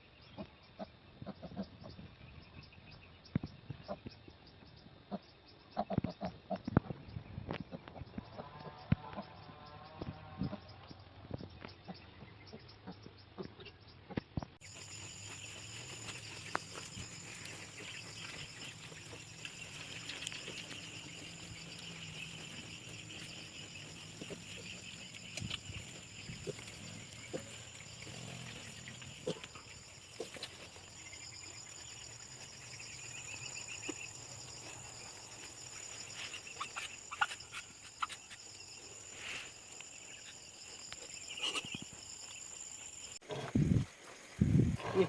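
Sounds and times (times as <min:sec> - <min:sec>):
chirping insects: 0:00.0 - 0:45.0
pigs grunting: 0:14.9 - 0:30.7.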